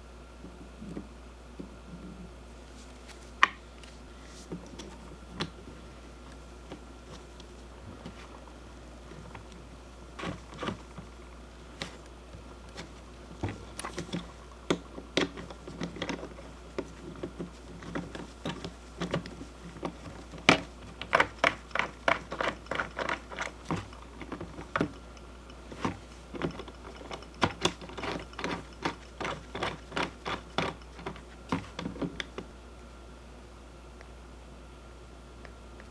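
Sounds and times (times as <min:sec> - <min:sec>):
hard objects clicking and tapping: 0:03.4 - 0:03.6, 0:13.4 - 0:32.5.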